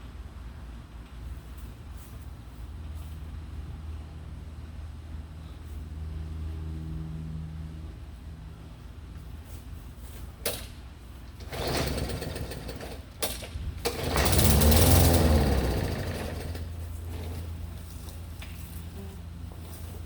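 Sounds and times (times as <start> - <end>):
lawn mower engine cranking: 11.3 - 17.7.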